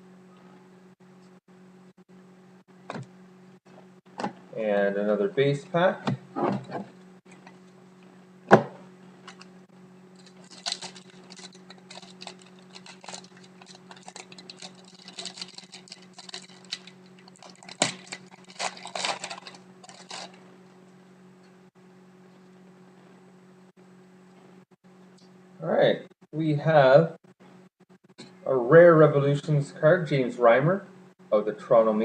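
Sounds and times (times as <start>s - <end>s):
low electrical hum: 0.0s - 32.0s
card pack snapping: 10.2s - 20.4s.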